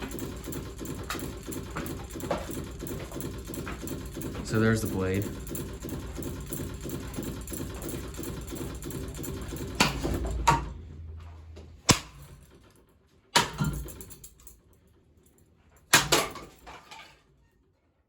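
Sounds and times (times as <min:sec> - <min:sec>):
ceiling fan clattering: 0:00.0 - 0:17.4
sharp impact bangs: 0:11.8 - 0:12.5.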